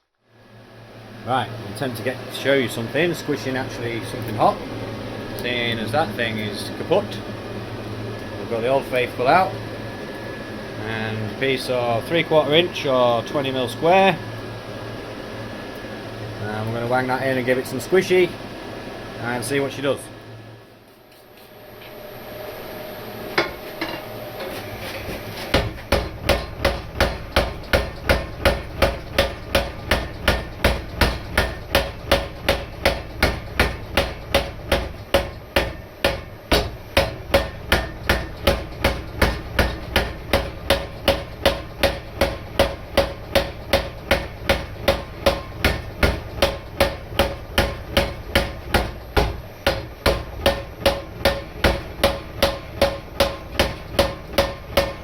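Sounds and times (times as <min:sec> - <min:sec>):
motor hum: 0:00.2 - 0:55.0
power hammer striking hot steel: 0:25.5 - 0:55.0.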